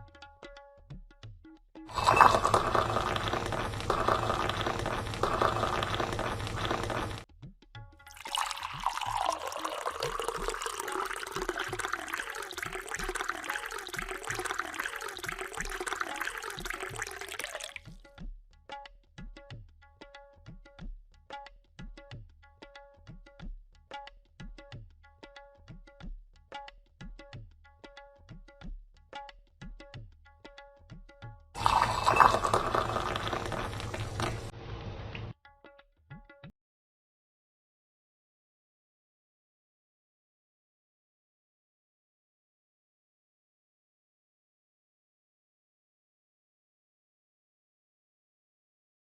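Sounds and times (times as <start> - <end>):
tabla music: 0.0 - 36.5
tea being poured: 1.9 - 7.2, 8.1 - 18.0, 31.6 - 34.6.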